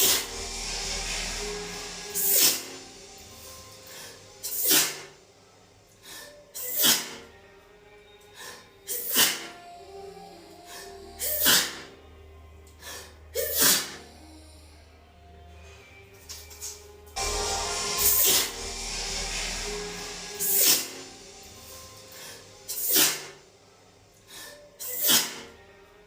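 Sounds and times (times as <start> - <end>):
woman sneezing: 13.4 - 14.0.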